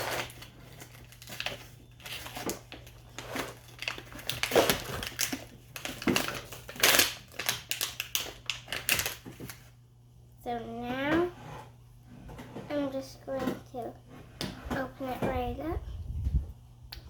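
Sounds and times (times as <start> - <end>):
plastic bottle and packaging crinkling: 0.0 - 9.8.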